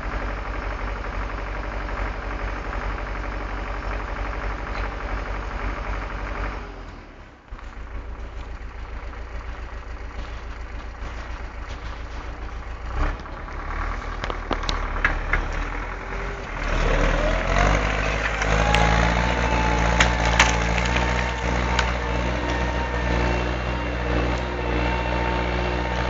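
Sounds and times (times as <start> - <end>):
tractor diesel engine revving: 0.0 - 26.0
rising whine: 16.9 - 26.0.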